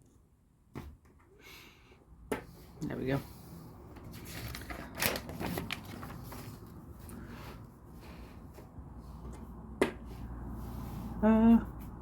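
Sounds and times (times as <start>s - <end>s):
plastic pieces rustling: 4.2s - 6.6s.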